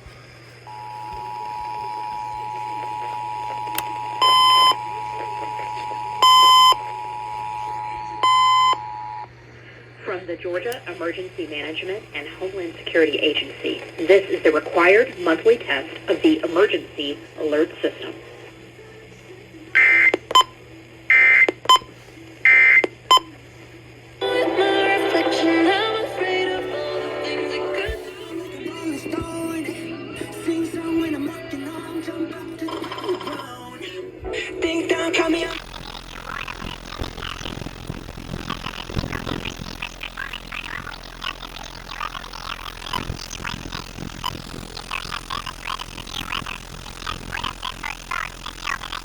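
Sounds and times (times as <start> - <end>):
faint steady hum: 0.0 - 49.0
screeching digital data tones: 35.3 - 49.0
sharp electronic beep: 35.3 - 49.0.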